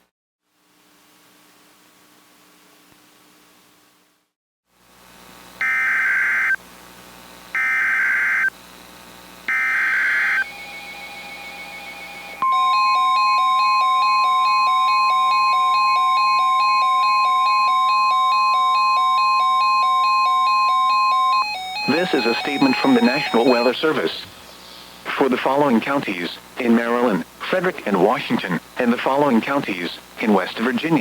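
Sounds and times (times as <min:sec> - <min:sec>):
digital data screech bursts: 0:07.6 - 0:08.5, 0:09.5 - 0:10.6, 0:21.8 - 0:23.9
high-pitched alert tone: 0:21.4 - 0:23.7
stepping chime-like melody: 0:21.8 - 0:23.8.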